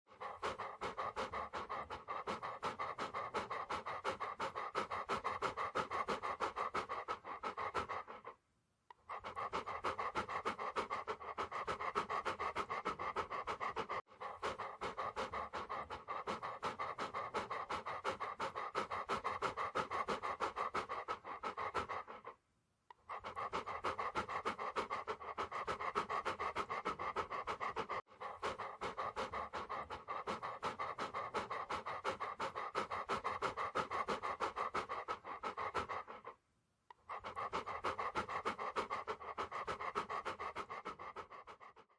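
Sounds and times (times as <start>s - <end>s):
dog panting: 0.0s - 41.9s.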